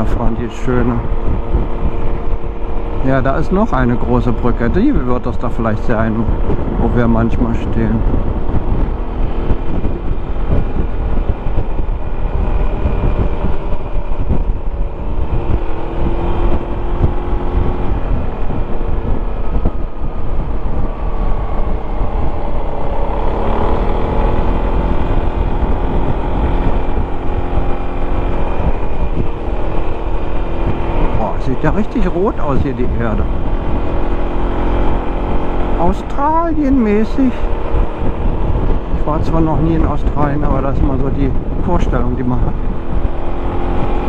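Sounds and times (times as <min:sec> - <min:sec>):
steady low rumble: 0:00.0 - 0:44.0
scooter engine running: 0:08.0 - 0:39.0.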